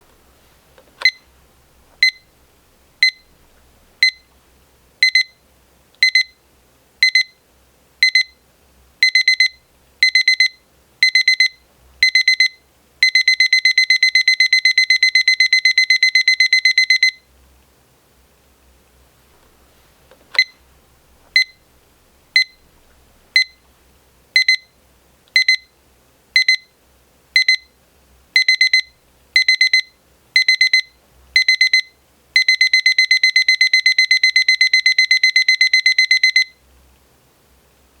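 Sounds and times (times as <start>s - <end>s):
alarm clock beeping: 3.0s - 3.2s, 5.0s - 5.3s, 9.0s - 17.2s, 24.4s - 24.6s, 25.4s - 25.6s, 26.4s - 26.7s, 27.4s - 27.7s, 28.4s - 36.6s.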